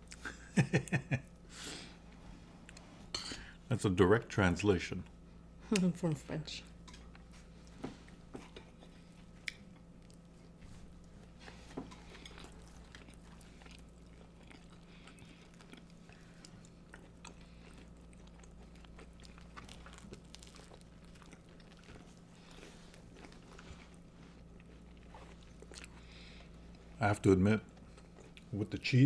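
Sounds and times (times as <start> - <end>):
soft chewing and mouth clicks: 2.1 - 3.0, 6.7 - 28.6.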